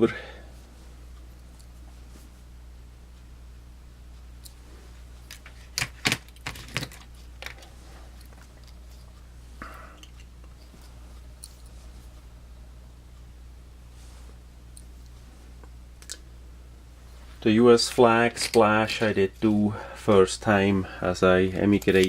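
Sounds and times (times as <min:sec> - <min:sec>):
low steady hum: 0:00.0 - 0:22.0.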